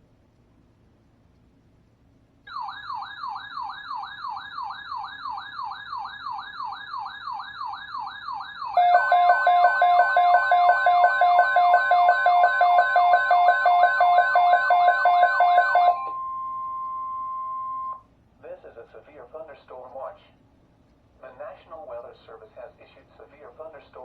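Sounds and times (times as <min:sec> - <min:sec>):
two-tone alarm with pulsing beep: 0:02.5 - 0:18.0.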